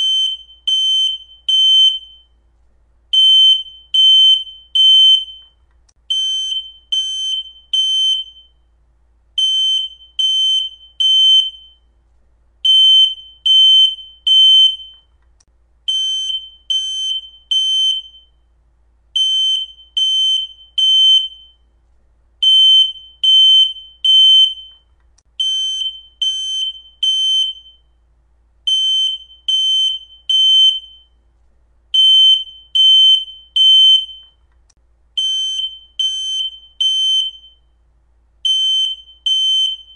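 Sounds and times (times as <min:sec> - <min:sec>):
smoke alarm beeping: 0:00.0 - 0:02.4, 0:03.1 - 0:08.7, 0:09.4 - 0:12.0, 0:12.6 - 0:15.2, 0:15.9 - 0:18.4, 0:19.2 - 0:21.7, 0:22.4 - 0:28.0, 0:28.7 - 0:31.2, 0:32.0 - 0:34.4, 0:35.2 - 0:37.8, 0:38.4 - 0:39.9.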